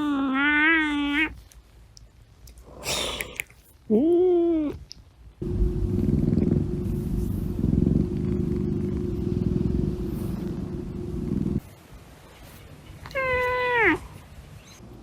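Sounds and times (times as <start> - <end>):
cat purring: 5.4 - 11.8.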